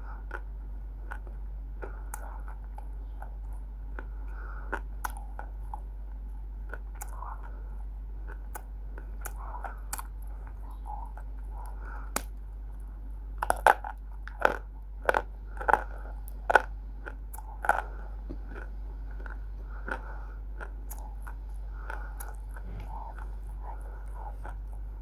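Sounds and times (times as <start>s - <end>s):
quiet chewing: 0.0s - 25.0s
crunching clay: 8.3s - 24.8s.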